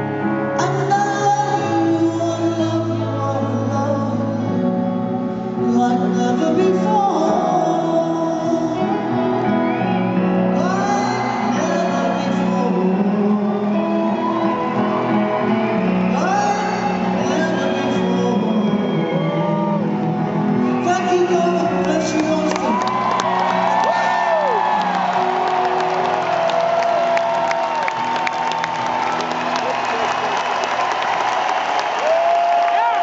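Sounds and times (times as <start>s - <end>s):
live concert music with singing: 0.0s - 33.0s
audience shouting and whooping: 8.8s - 33.0s.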